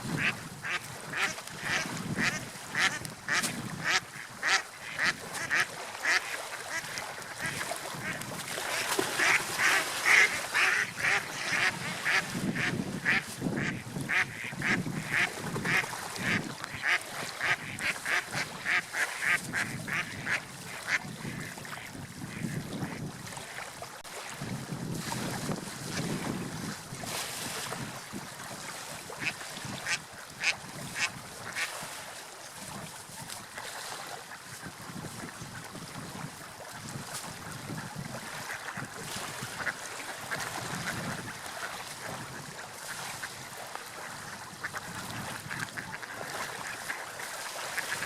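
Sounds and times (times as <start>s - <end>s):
rushing water: 0.0s - 48.0s
wind: 0.0s - 48.0s
ducks quacking: 0.1s - 23.1s, 29.2s - 31.7s, 38.4s - 43.4s, 44.0s - 47.0s.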